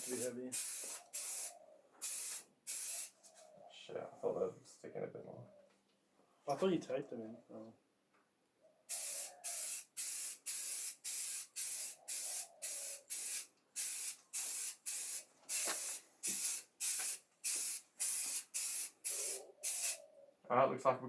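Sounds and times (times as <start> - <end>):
aerosol spray can bursts: 0.0 - 3.1, 8.9 - 20.0.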